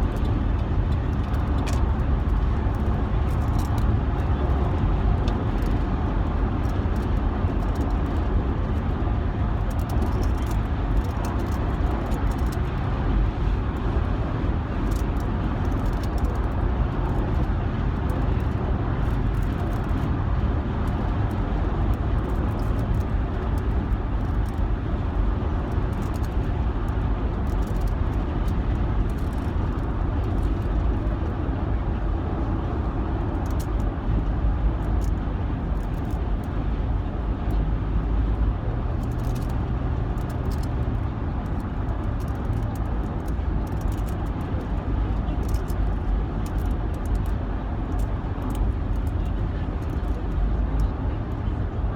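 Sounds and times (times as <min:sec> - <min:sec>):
car road and engine noise: 0:00.0 - 0:51.9.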